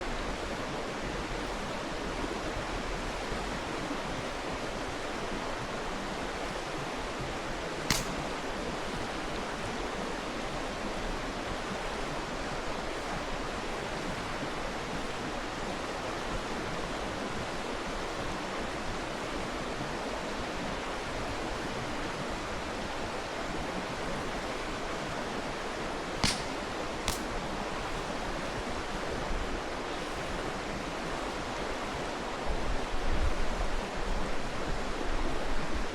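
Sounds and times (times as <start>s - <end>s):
mountain stream rushing: 0.0s - 35.9s
campfire wood popping: 7.9s - 8.4s, 26.2s - 27.4s.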